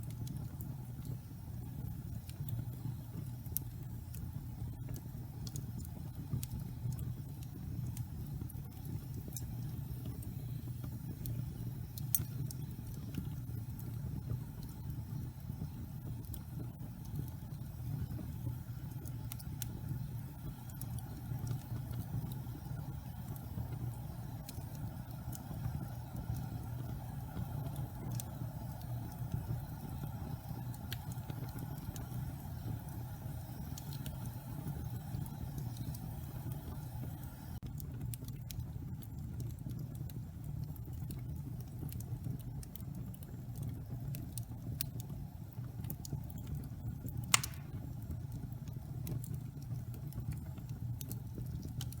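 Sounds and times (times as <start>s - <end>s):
fire flames rumbling: 0.0s - 52.0s
logs crackling: 47.3s - 47.8s
loud sharp pop of fire: 47.3s - 47.9s.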